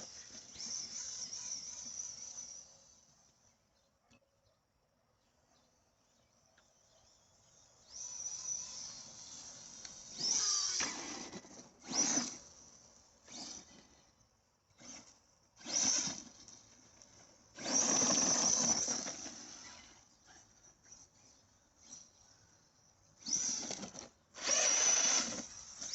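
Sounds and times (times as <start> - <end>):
electric motor whining: 7.3 - 14.1, 14.8 - 20.2, 23.2 - 25.9.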